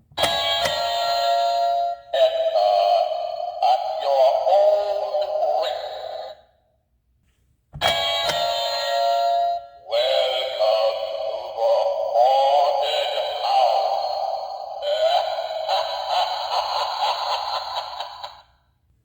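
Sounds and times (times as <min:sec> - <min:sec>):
electronic doorbell chime: 0:00.2 - 0:03.6, 0:07.8 - 0:09.8
recorded witch voice laughing: 0:03.7 - 0:06.3, 0:09.9 - 0:18.5.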